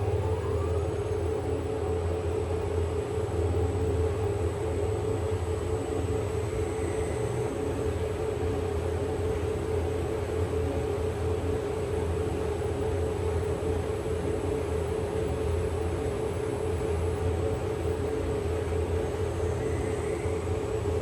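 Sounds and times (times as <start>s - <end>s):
faint high whine: 0.0s - 14.0s, 14.7s - 21.0s
ct scanner machine hum: 0.0s - 21.0s.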